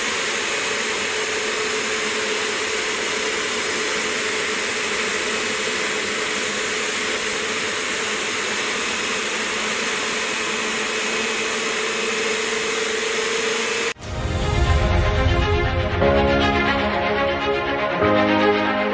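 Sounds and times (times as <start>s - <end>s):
extraction cleaner suction motor: 0.0s - 14.0s
music: 14.0s - 18.9s.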